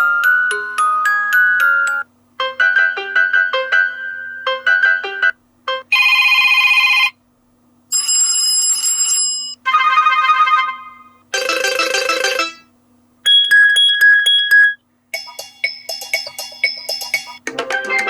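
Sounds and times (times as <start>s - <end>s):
phone ringtones: 5.9s - 7.2s, 11.4s - 12.7s.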